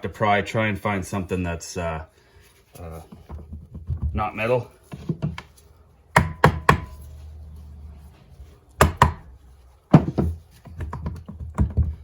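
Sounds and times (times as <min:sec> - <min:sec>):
sharp knocks on motorcycle engine: 0:06.2 - 0:07.0, 0:08.8 - 0:09.2.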